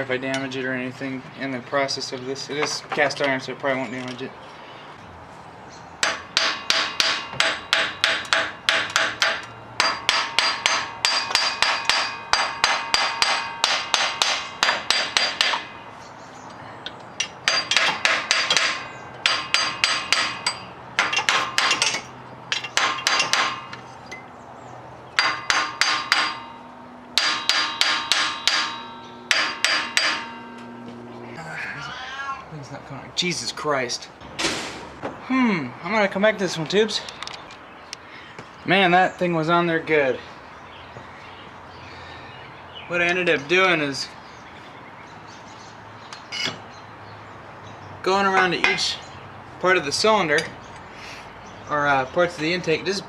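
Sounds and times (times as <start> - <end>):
hammer ringing on metal: 6.0 - 16.0, 17.2 - 23.8, 25.2 - 31.0.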